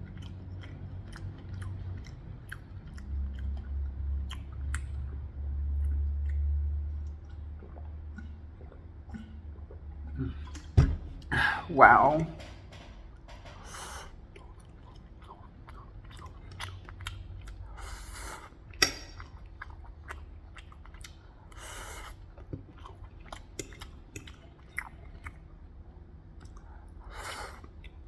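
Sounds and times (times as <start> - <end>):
person chewing food: 0.0 - 11.4, 13.2 - 28.0
wet mouth clicks: 0.2 - 9.4, 23.2 - 25.4.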